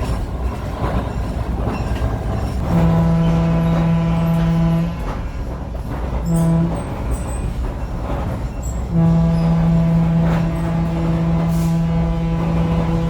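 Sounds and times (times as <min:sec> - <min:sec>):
train running rumble: 0:00.0 - 0:13.0
train horn blasts: 0:02.6 - 0:05.5, 0:06.2 - 0:07.6, 0:08.8 - 0:13.0.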